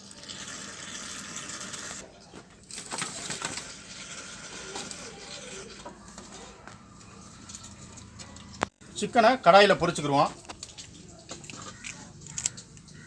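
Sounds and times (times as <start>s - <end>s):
hands mixing wet marinade: 4.8s - 13.0s.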